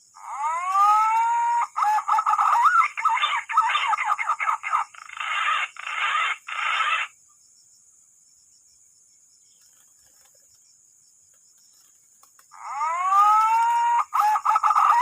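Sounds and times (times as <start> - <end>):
high-pitched insect drone: 0.0 - 10.8, 11.4 - 15.0
harsh chicken calls: 0.2 - 7.2, 12.5 - 15.0.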